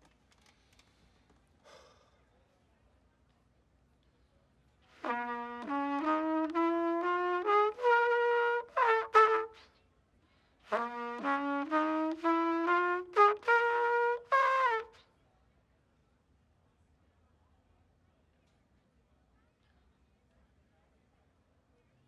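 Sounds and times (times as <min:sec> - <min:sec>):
trumpet-like brass melody: 0:05.0 - 0:09.7, 0:10.7 - 0:15.0.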